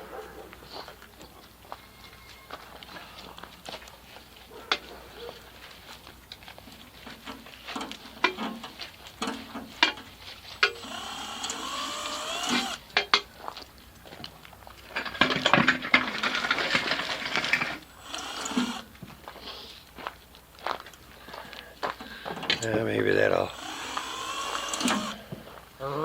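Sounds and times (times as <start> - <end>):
handling clicks and knocks: 6.0 - 10.8, 12.5 - 17.9
screw gun motor: 10.6 - 13.2, 16.1 - 19.0, 22.6 - 25.4.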